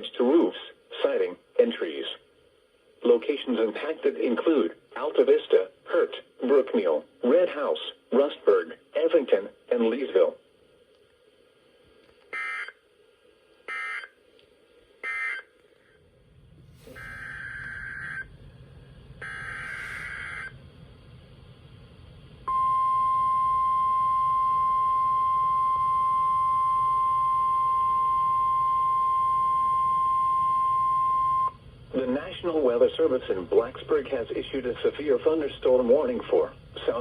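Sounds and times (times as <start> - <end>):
steady warning alarm tone: 12.4 - 12.8, 13.7 - 14.2, 15.0 - 15.5, 16.8 - 20.9, 22.4 - 33.2
screechy data tone bursts: 16.8 - 18.5, 19.2 - 20.6.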